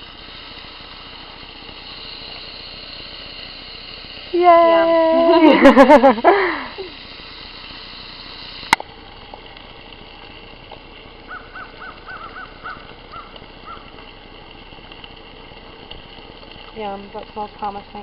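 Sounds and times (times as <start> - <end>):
steady high hiss: 0.0 - 18.0
faint bird chirps: 11.3 - 13.8.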